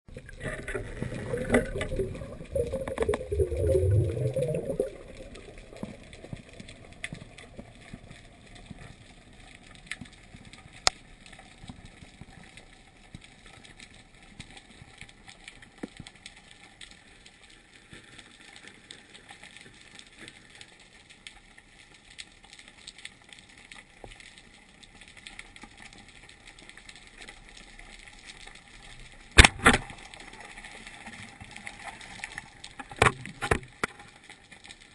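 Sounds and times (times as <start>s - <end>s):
water bubbling and churning: 0.1s - 10.9s
small clicks: 4.3s - 34.9s.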